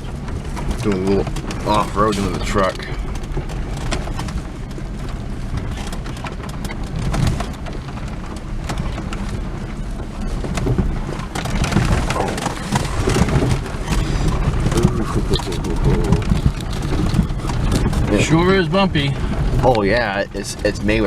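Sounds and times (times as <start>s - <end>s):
truck rumbling: 0.0s - 21.0s
tyres crunching over stones: 0.0s - 21.0s.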